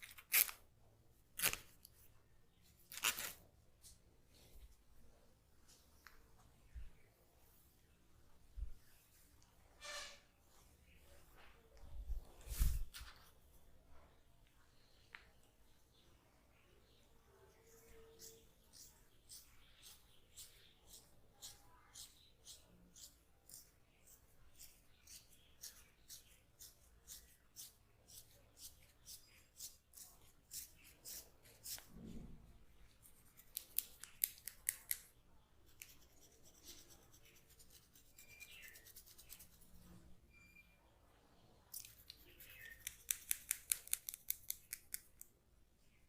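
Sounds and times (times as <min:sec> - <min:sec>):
scissors snipping: 0:33.4 - 0:35.1, 0:41.7 - 0:45.3.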